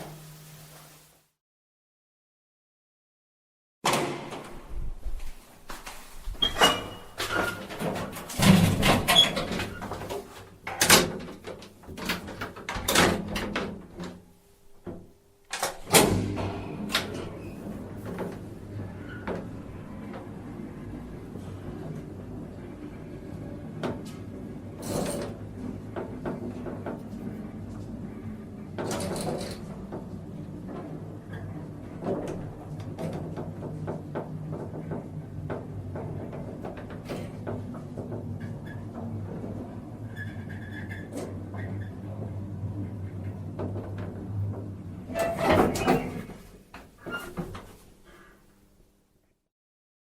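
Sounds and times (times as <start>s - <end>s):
elevator door clunk: 15.5s - 20.5s, 43.6s - 46.4s
elevator door sliding rush: 15.9s - 46.4s
elevator humming: 16.2s - 24.8s.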